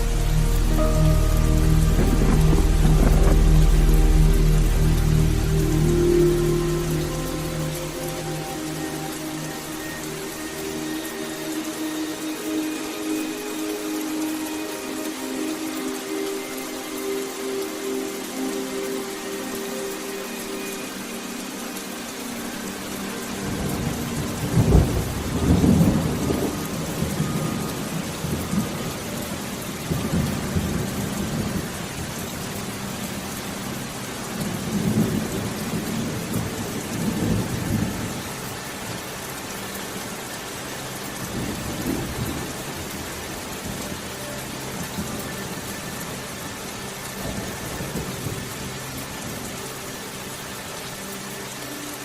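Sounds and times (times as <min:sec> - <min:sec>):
steady rain: 0:00.0 - 0:52.0
low thunder rumbles: 0:00.8 - 0:05.5.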